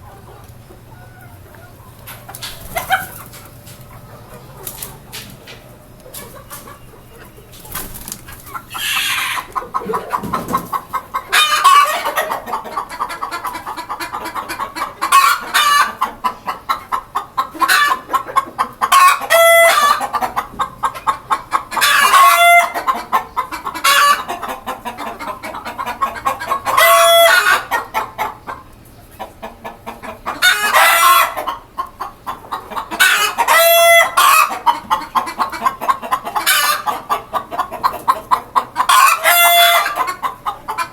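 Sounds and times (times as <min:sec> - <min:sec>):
chickens clucking: 0:00.0 - 0:40.9
loud drawn-out chicken call: 0:08.7 - 0:09.5.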